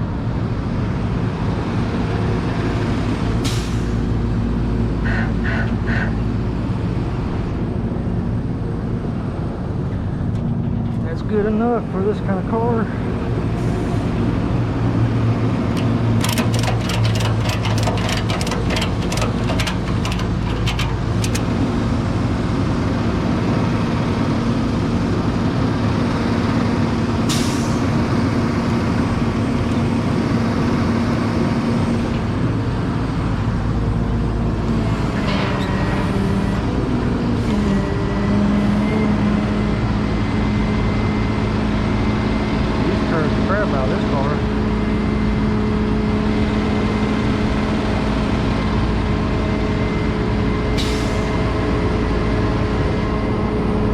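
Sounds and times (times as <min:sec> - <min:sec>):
tow truck engine running: 0:12.9 - 0:53.9
quick clicks: 0:15.8 - 0:21.5.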